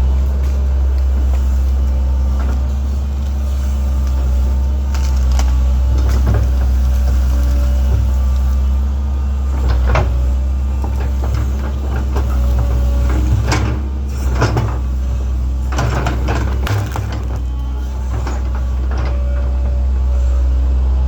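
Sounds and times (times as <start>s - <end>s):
excavator diesel engine running: 0.0s - 21.0s
bucket scraping dirt and stone: 15.6s - 19.5s.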